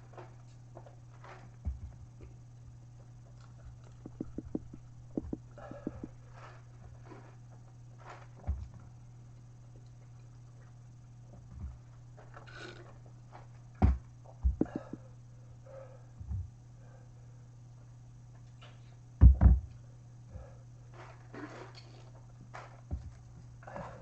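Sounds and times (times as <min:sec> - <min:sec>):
steady low hum: 0:00.0 - 0:24.0
chewing and crunching: 0:03.1 - 0:06.3.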